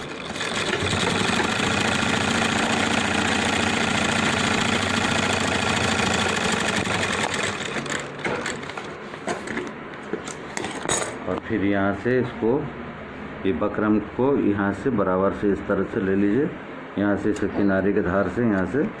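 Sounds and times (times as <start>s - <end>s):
sewing machine stitching: 0.0s - 9.0s.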